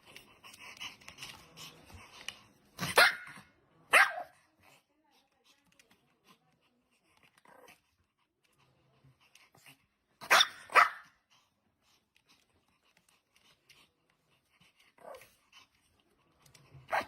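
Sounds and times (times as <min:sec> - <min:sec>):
dog barking: 0:02.8 - 0:04.4, 0:10.2 - 0:11.2.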